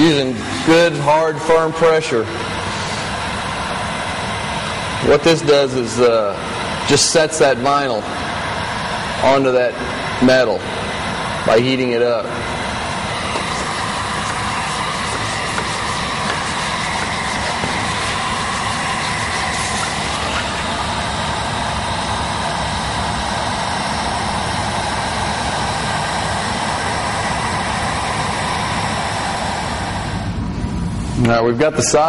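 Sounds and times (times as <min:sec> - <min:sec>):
heat gun blowing air: 0:12.6 - 0:22.1.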